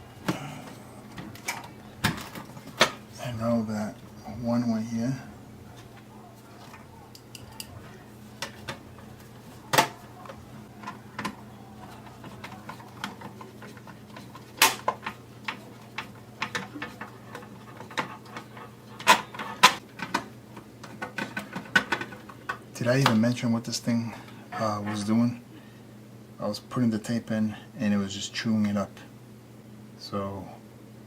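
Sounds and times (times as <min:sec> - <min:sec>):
steady low hum: 0:00.0 - 0:31.0
small parts clattering: 0:06.5 - 0:22.6.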